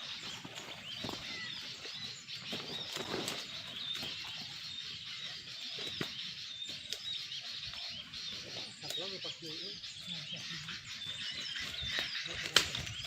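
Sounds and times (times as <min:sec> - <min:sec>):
small birds chirping: 0:00.0 - 0:13.0
wings fluttering: 0:00.1 - 0:04.6.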